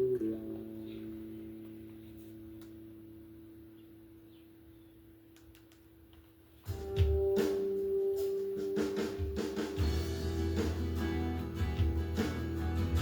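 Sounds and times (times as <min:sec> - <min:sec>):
faint clicks: 0:05.3 - 0:06.3
band backing track: 0:06.7 - 0:13.0.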